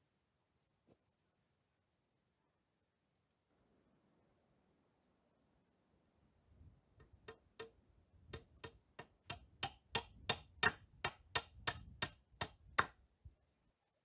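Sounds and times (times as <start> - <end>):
rapid sharp knocks: 8.4 - 12.9.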